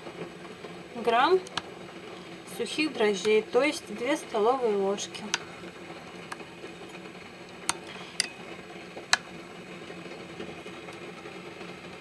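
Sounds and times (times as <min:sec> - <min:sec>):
steady low hum: 0:00.0 - 0:12.0
utensils clinking against dish: 0:08.1 - 0:08.4.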